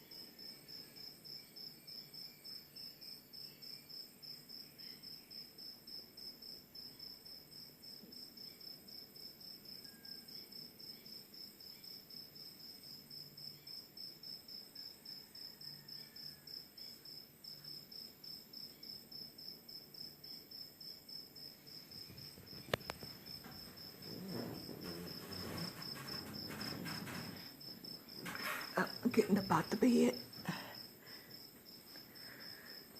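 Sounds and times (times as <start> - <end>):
crickets chirping: 0.0 - 32.9
rustling: 21.8 - 30.7.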